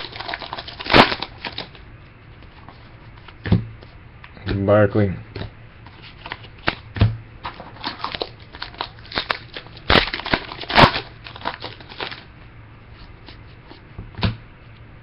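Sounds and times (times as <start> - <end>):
foil wrapper crinkling: 0.0 - 1.8, 7.4 - 12.3.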